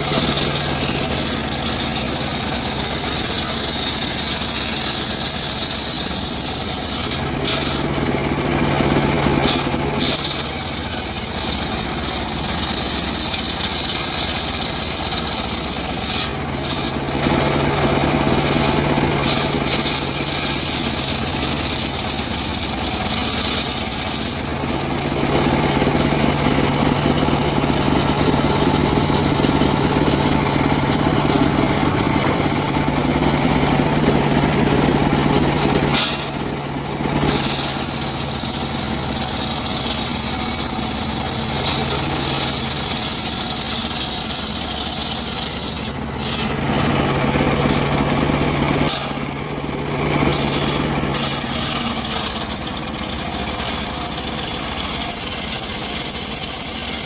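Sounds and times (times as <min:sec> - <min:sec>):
engine-driven saw cutting timber: 0:00.0 - 0:57.0.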